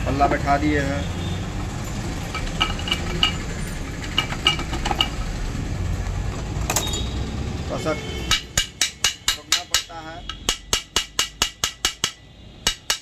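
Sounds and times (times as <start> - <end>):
metal tools tapping engine casing: 2.3 - 5.2.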